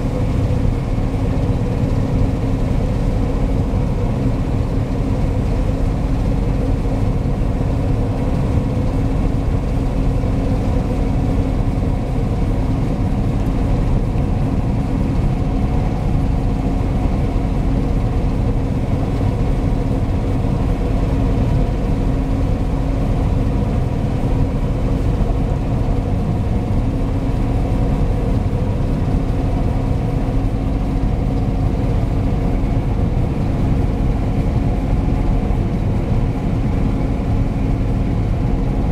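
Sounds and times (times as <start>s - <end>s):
combine harvester engine drone: 0.0s - 38.9s.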